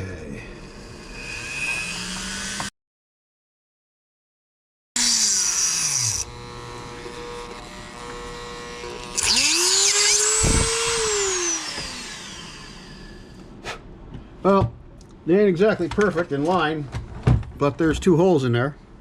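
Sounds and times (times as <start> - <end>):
electric drill boring metal: 0.5 - 2.7, 5.0 - 13.4.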